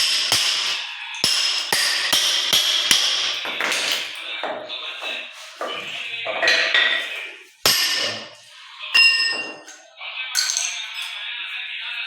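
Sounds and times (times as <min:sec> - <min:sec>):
hammer striking metal chisel: 0:00.0 - 0:04.6, 0:06.5 - 0:08.4, 0:09.0 - 0:09.8.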